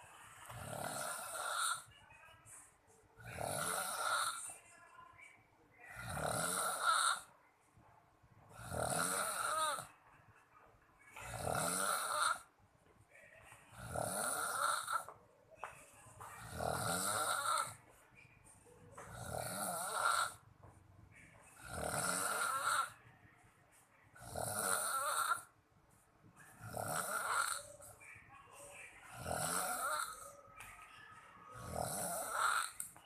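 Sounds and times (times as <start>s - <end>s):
person snoring heavily: 0.5s - 1.9s, 3.2s - 4.4s, 6.0s - 7.3s, 8.5s - 9.9s, 11.3s - 12.4s, 13.8s - 15.1s, 16.4s - 17.8s, 19.1s - 20.4s, 21.6s - 23.0s, 24.2s - 25.5s, 26.7s - 27.6s, 29.1s - 30.2s, 31.6s - 32.8s.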